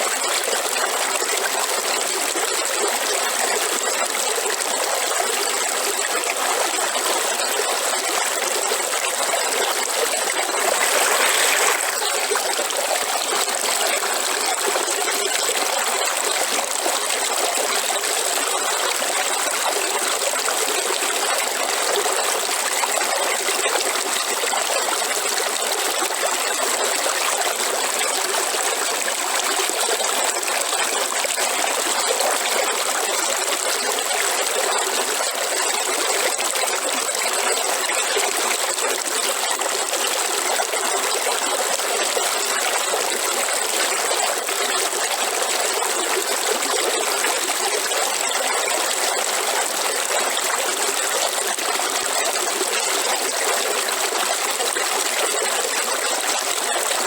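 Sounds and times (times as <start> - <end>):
river water splashing over rocks: 9.8 - 15.3.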